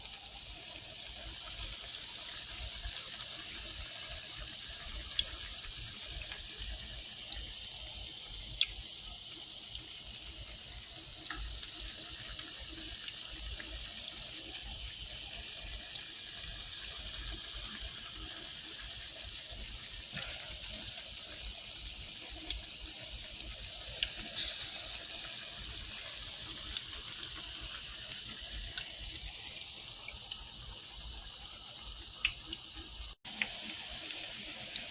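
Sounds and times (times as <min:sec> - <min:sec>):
fish patties sizzling in oil: 0:00.0 - 0:34.9
oil popping and crackling: 0:22.3 - 0:29.4.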